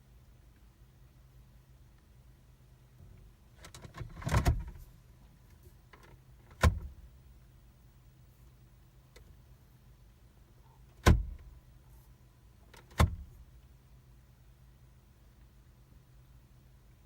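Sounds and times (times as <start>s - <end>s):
faint steady hum: 0.0s - 17.0s
gear selector clicks and clunks: 3.6s - 4.9s, 5.5s - 7.0s, 9.1s - 9.3s, 10.9s - 11.6s, 12.7s - 13.4s.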